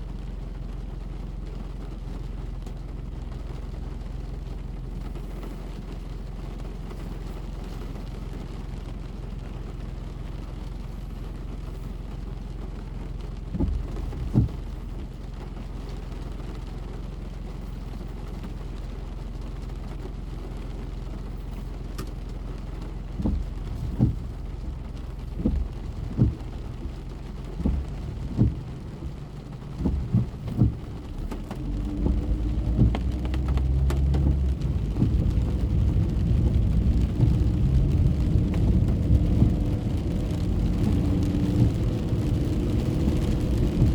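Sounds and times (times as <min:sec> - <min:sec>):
rain on a car: 0:00.0 - 0:43.9
road and engine rumble: 0:00.0 - 0:43.9
dull low thumps: 0:12.3 - 0:16.3, 0:20.2 - 0:43.9
engine rising tone: 0:29.8 - 0:43.9.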